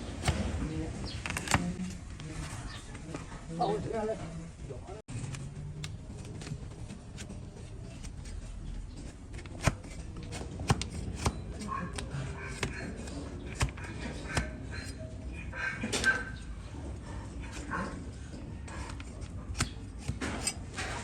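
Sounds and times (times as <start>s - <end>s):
blade scraping a hoof: 6.5s - 21.0s.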